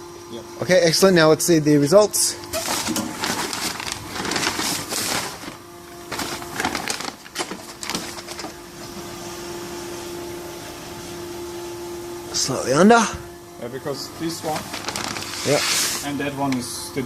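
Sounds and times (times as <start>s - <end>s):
machine hum with hiss: 0.0s - 17.0s
rustling and knocking of handling: 2.5s - 8.9s.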